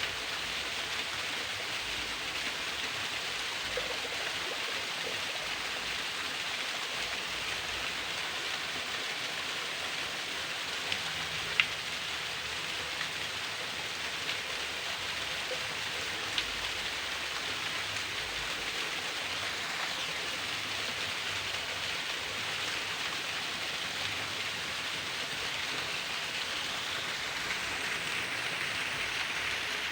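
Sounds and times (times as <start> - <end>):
waterfall splashing: 16.4 - 29.9.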